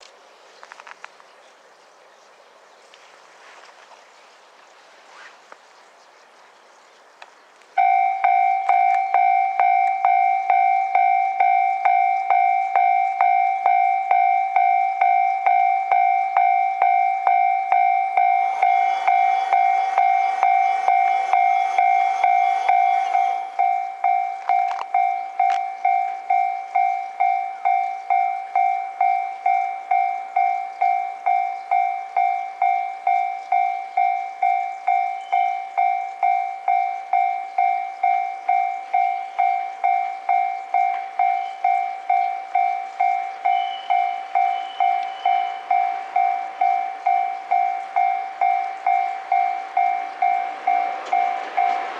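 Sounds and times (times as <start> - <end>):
level crossing warning bell: 7.8 - 51.9
train passing: 7.8 - 51.9.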